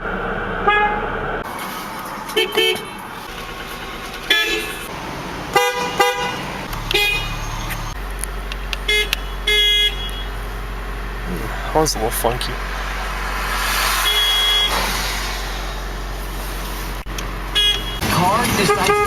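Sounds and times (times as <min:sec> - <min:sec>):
car horn toots: 0:00.6 - 0:01.1, 0:02.4 - 0:03.0, 0:04.2 - 0:04.9, 0:05.5 - 0:07.5, 0:08.8 - 0:10.4, 0:14.0 - 0:14.8, 0:17.5 - 0:19.0.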